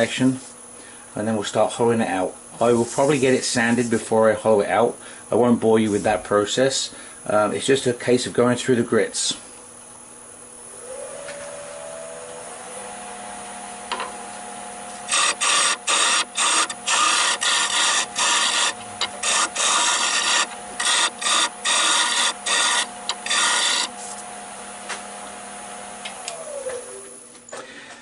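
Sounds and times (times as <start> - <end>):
wood lathe motor whine: 10.6 - 27.3
turning tool scraping wood: 14.9 - 24.3.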